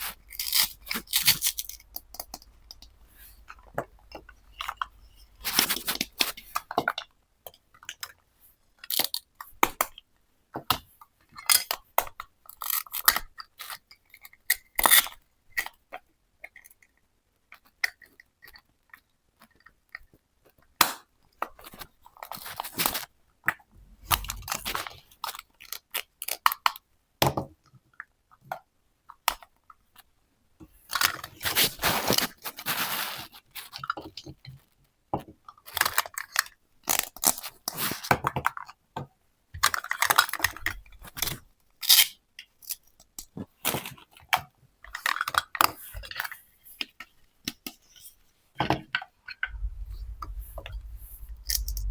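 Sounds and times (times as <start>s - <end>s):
crinkly rustling and scraping: 0.0s - 9.6s, 21.4s - 26.4s, 29.7s - 34.8s, 35.4s - 38.8s, 39.6s - 51.9s
toy kitchen pieces clattering: 39.6s - 41.2s, 44.9s - 46.4s.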